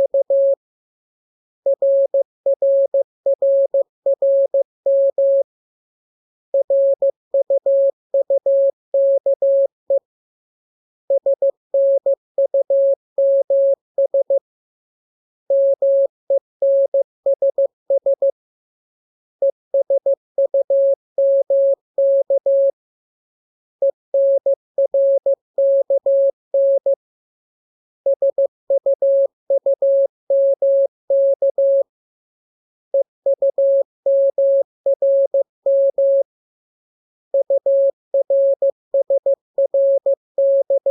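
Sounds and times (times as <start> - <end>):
morse code beeps: 0.0 - 0.6, 19.8 - 22.7, 24.2 - 27.0, 28.1 - 31.8, 33.0 - 36.2, 37.4 - 40.9.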